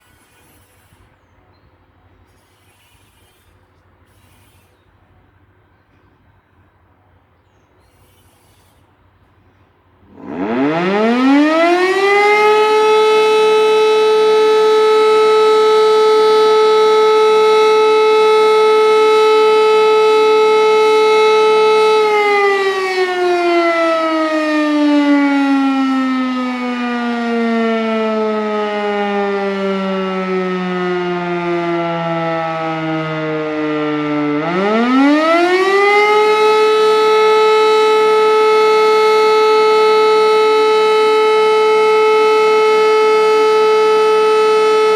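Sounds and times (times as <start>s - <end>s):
electromechanical siren wailing: 10.1s - 44.9s.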